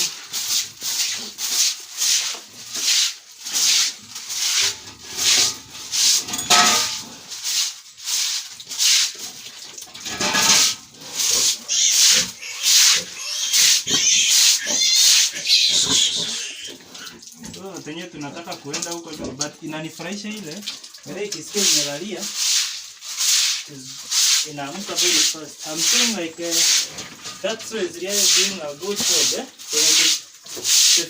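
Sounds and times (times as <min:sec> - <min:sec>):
broom scraping floor: 0:00.0 - 0:09.3, 0:10.1 - 0:13.7, 0:21.6 - 0:31.0
pig grunting: 0:11.0 - 0:17.7.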